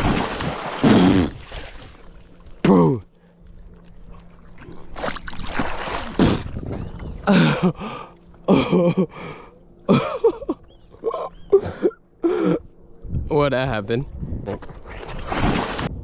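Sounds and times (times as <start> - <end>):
seawater splash: 0.0 - 2.6, 4.0 - 6.6.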